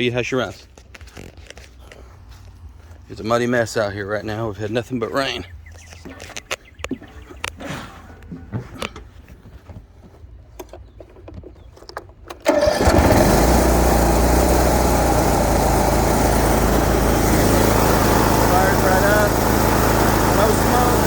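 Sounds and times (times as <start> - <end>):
mower engine starting and running: 12.3 - 21.0.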